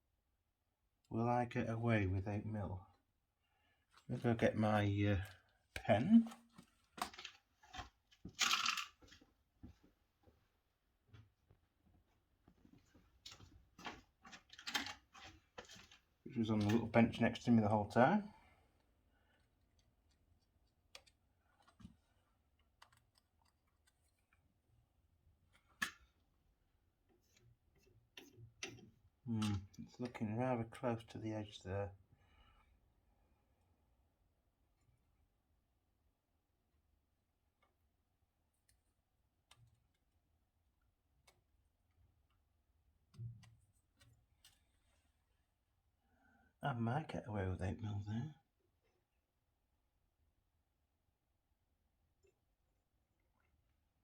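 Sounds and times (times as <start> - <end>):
faint clicks and taps of handling: 11.1 - 16.9, 18.8 - 24.5, 38.6 - 40.2, 43.0 - 45.1.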